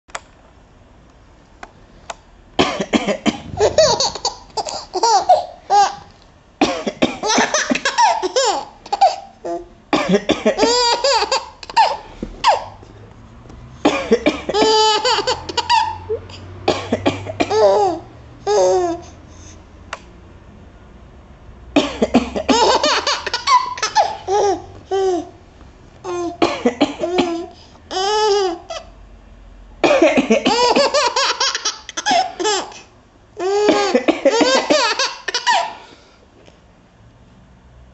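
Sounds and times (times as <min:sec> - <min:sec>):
adult coughing: 0:02.6 - 0:04.1, 0:06.6 - 0:07.5, 0:09.9 - 0:10.6, 0:13.9 - 0:14.6, 0:16.4 - 0:17.6, 0:21.8 - 0:22.6, 0:26.4 - 0:27.5, 0:29.8 - 0:30.9, 0:33.6 - 0:34.7
baby laughing: 0:03.5 - 0:06.1, 0:07.2 - 0:09.7, 0:10.5 - 0:12.8, 0:14.5 - 0:16.2, 0:17.4 - 0:19.0, 0:22.3 - 0:25.4, 0:26.0 - 0:26.4, 0:27.0 - 0:28.9, 0:30.0 - 0:35.8.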